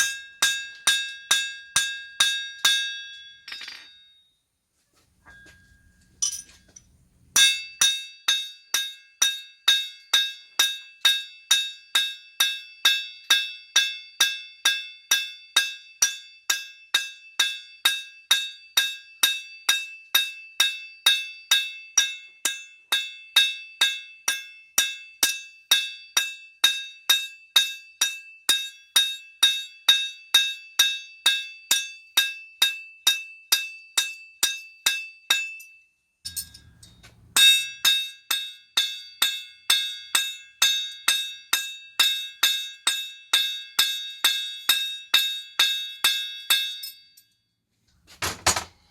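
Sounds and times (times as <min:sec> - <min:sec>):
hammer clanging on steel and anvil: 0:00.0 - 0:04.0, 0:05.2 - 0:07.7, 0:36.3 - 0:38.5, 0:48.1 - 0:48.9.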